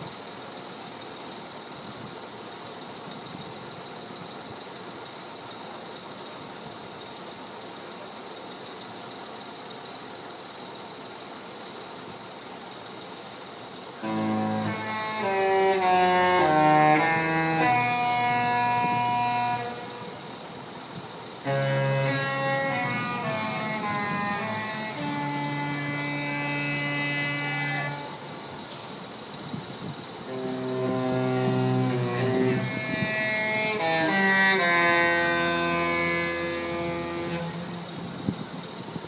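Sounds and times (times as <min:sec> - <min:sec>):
background hiss: 0:00.0 - 0:39.0
ship's musical horn playing a tune: 0:14.0 - 0:20.2, 0:21.4 - 0:28.3, 0:30.3 - 0:38.0.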